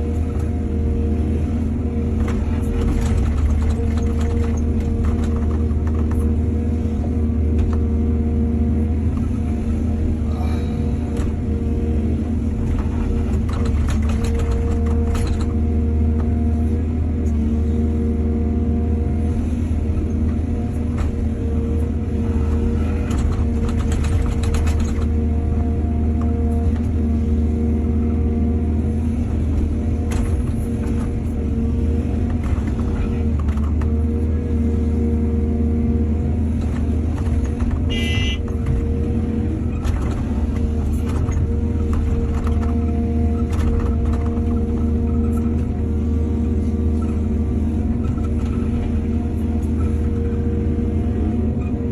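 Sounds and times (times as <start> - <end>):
excavator diesel engine running: 0.0 - 51.9
knocks and clatters: 2.2 - 6.3, 12.6 - 15.7, 23.0 - 25.2, 32.2 - 34.1, 36.6 - 39.0, 39.6 - 45.8.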